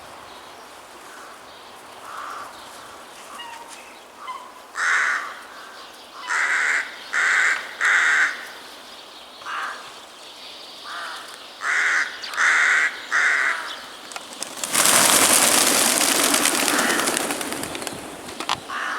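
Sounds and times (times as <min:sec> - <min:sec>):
crows cawing: 0:01.0 - 0:01.4, 0:02.0 - 0:08.7, 0:09.4 - 0:09.9, 0:10.8 - 0:14.0, 0:15.1 - 0:17.7, 0:18.7 - 0:18.9.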